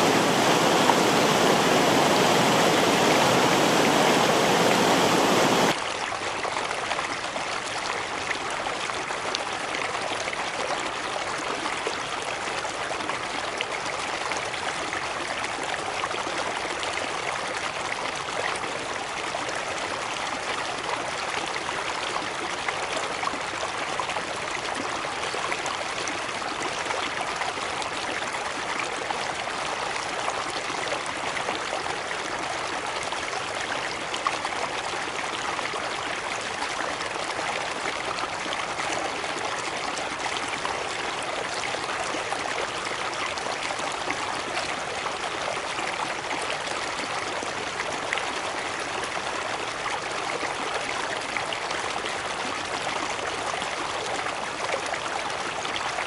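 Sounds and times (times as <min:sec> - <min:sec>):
stream rushing over rocks: 0:00.0 - 0:05.8.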